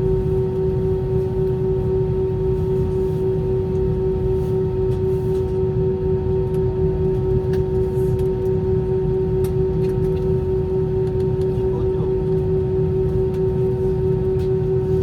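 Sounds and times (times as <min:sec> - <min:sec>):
airplane cabin engine rumble: 0:00.0 - 0:15.0.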